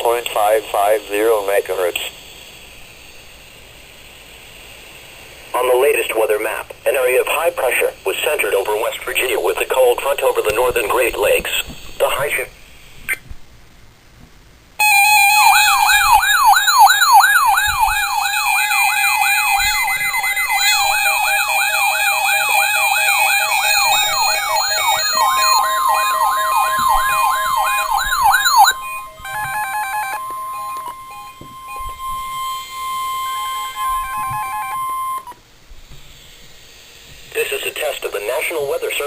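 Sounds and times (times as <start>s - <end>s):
rapid siren wail: 14.8s - 35.4s
steady high tone: 14.8s - 35.4s
stepped beeping: 14.8s - 35.4s.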